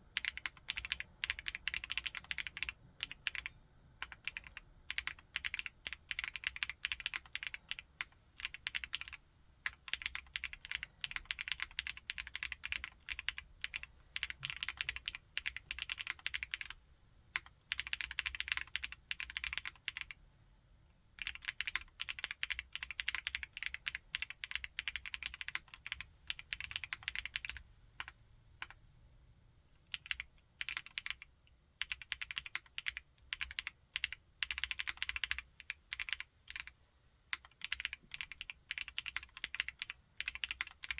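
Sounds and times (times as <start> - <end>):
mechanical keyboard typing: 0.2 - 16.8, 17.4 - 20.2, 21.2 - 28.8, 29.9 - 40.9.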